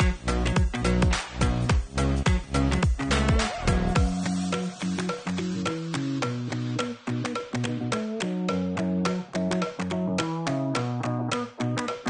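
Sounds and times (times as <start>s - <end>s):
synth music with percussive beat: 0.0s - 12.0s.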